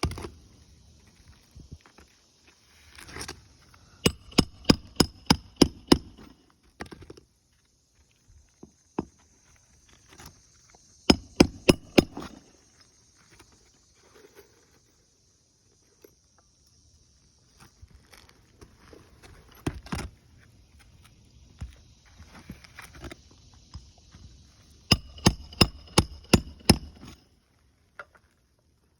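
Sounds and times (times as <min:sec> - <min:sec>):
hammer blows on roof shingles: 0:04.0 - 0:06.4, 0:11.1 - 0:12.4, 0:24.9 - 0:27.2
light scraping and handling: 0:13.1 - 0:15.0, 0:17.5 - 0:23.4.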